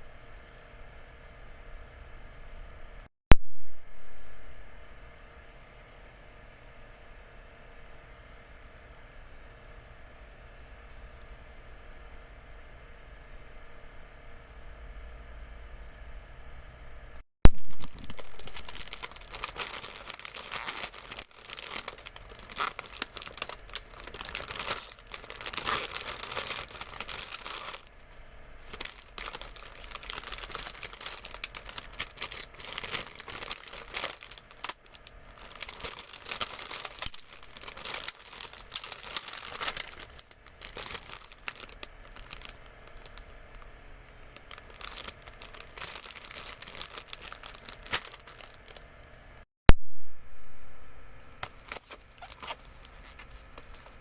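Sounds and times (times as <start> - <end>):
snack packaging crinkling: 17.5 - 48.9, 51.2 - 54.0.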